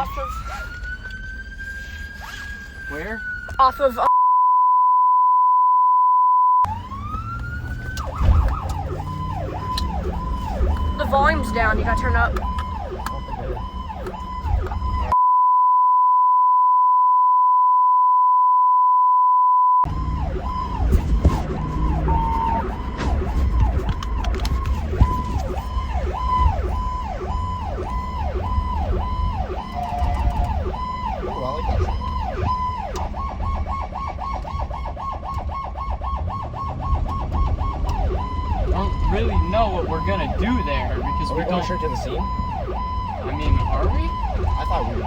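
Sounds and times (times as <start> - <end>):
electronic siren wailing: 0.0 - 4.1, 6.6 - 15.2, 19.8 - 45.0
vehicle rumble: 6.6 - 15.2, 19.8 - 45.0.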